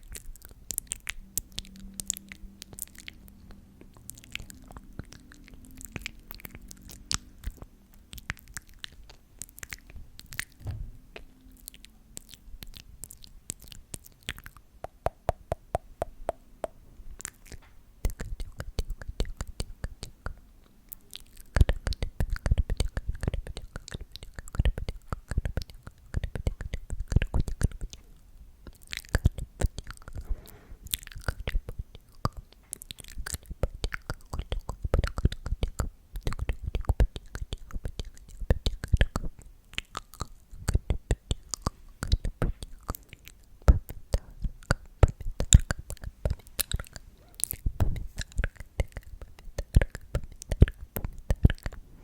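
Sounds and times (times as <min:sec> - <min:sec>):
wet mouth clicks and smacks: 0:00.0 - 0:30.2, 0:30.8 - 0:51.8.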